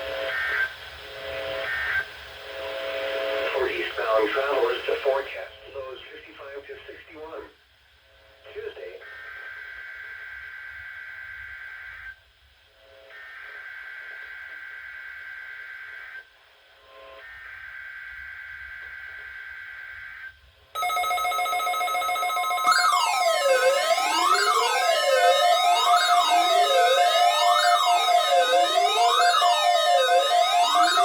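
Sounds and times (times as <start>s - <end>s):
loud electronic alarm: 20.8s - 31.0s
rising and falling alarm sweeps: 20.8s - 31.0s
warbling digital data tones: 20.8s - 31.0s.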